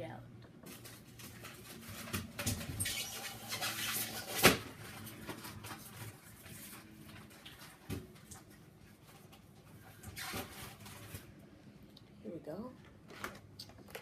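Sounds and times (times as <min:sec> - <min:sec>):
plastic rubbing and scraping: 0:00.6 - 0:11.4.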